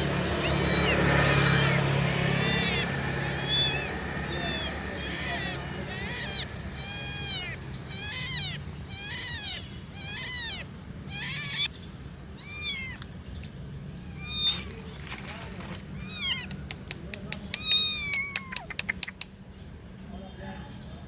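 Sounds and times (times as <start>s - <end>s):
kitten meowing: 0.0s - 11.7s, 12.4s - 13.2s, 13.9s - 19.3s.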